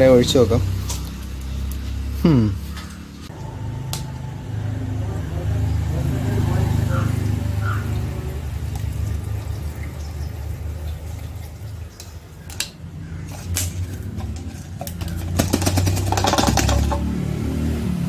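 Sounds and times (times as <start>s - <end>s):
petrol pouring into fuel tank: 7.6s - 12.6s, 13.2s - 17.1s
short clatter: 13.3s - 17.1s.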